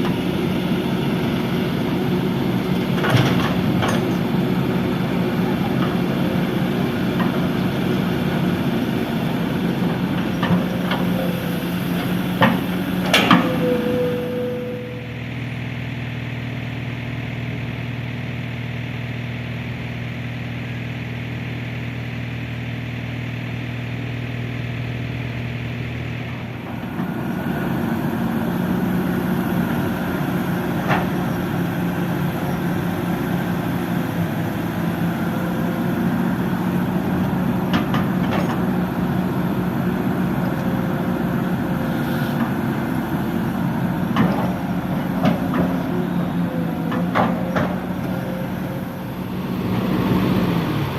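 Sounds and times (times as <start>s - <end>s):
excavator diesel engine revving: 0.0s - 19.9s, 24.5s - 50.9s.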